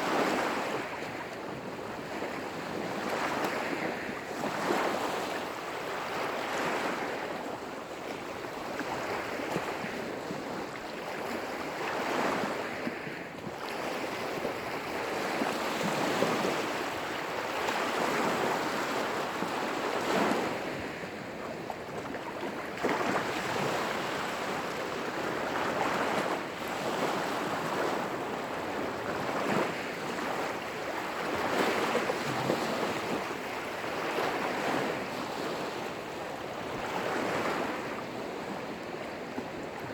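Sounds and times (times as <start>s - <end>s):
lake waves washing onto shore: 0.0s - 39.9s.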